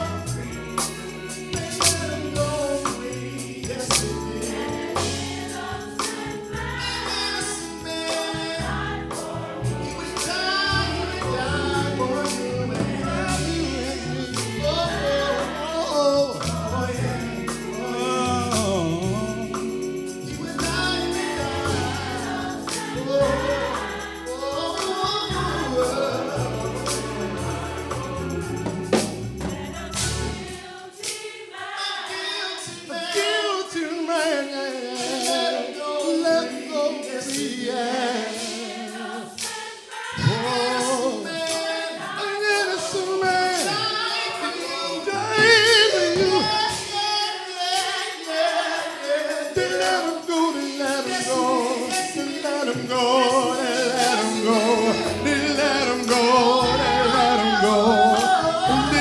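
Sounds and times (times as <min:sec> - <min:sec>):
percussion hits: 0:00.0 - 0:11.3, 0:11.9 - 0:33.4
gospel choir singing with band: 0:00.0 - 0:59.0
bass line: 0:08.4 - 0:30.6, 0:54.3 - 0:59.0.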